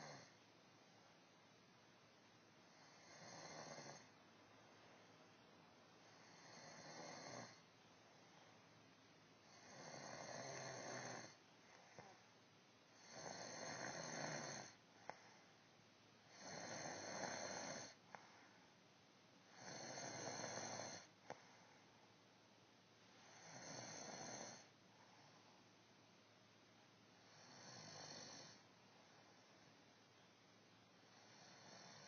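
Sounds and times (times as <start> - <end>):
woman snoring: 0.0 - 0.4, 2.7 - 4.1, 6.1 - 7.6, 9.5 - 11.4, 13.0 - 14.8, 16.3 - 18.0, 19.5 - 21.1, 23.3 - 24.7, 27.3 - 28.6, 31.1 - 32.0.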